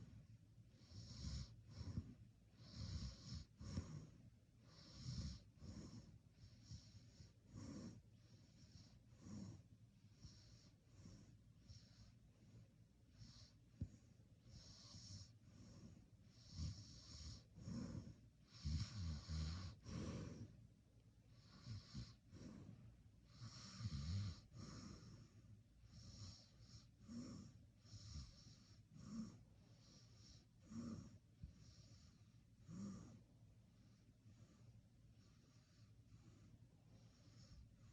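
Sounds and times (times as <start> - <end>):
person snoring and breathing: 13.2 - 20.6, 21.3 - 33.2.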